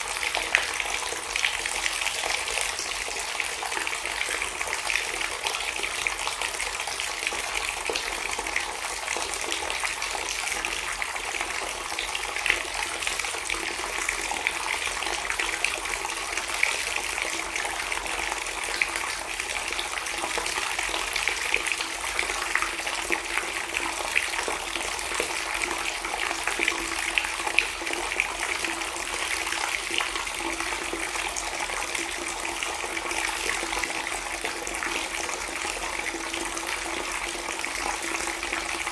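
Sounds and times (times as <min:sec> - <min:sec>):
water pouring and splashing: 0:09.8 - 0:38.9.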